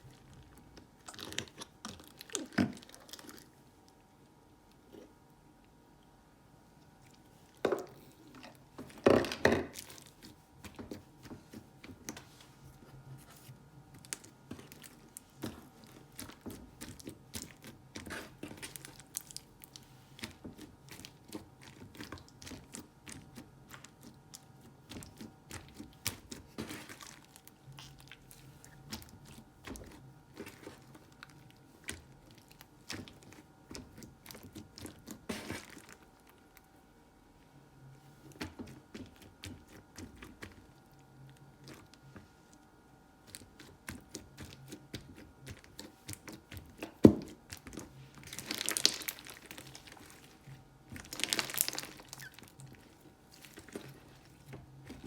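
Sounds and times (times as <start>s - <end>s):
slime squeezed by hand: 51.0s - 52.6s.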